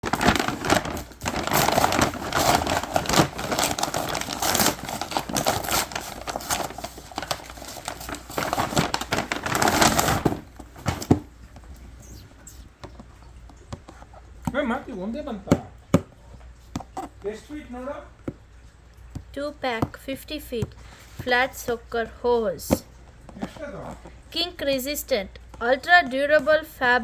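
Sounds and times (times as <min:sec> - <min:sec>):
packaging crinkling and rustling: 0:00.0 - 0:12.2.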